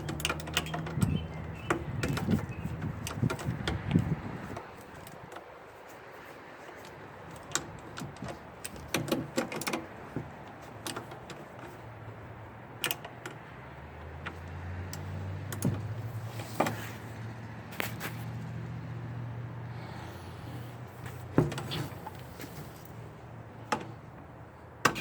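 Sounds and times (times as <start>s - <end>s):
hand tools clicking and clinking: 0.0s - 5.6s.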